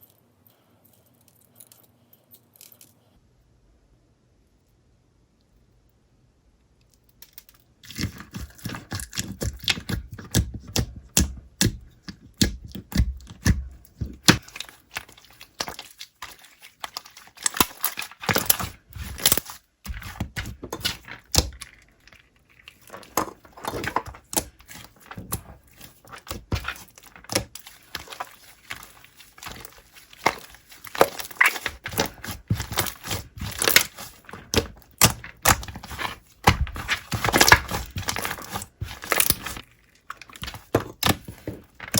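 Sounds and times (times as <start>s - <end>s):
slime crackling and popping: 11.7s - 41.9s.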